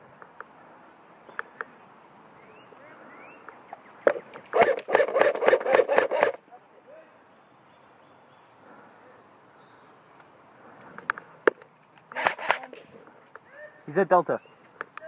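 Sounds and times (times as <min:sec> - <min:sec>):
airsoft gun rapid shots: 0:04.6 - 0:06.4, 0:12.2 - 0:12.7.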